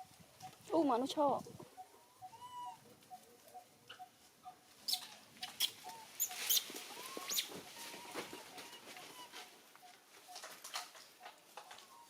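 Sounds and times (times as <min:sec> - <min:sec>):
monkeys squeaking: 0:04.9 - 0:09.5.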